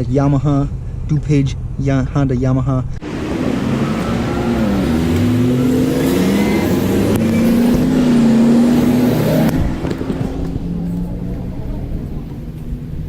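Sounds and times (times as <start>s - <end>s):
car engine accelerating: 3.0s - 13.0s.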